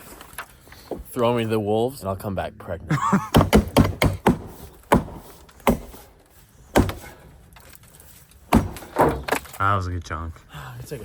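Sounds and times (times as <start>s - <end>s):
chopping strikes into tree limb: 3.3s - 6.0s, 6.7s - 7.2s, 8.5s - 9.4s.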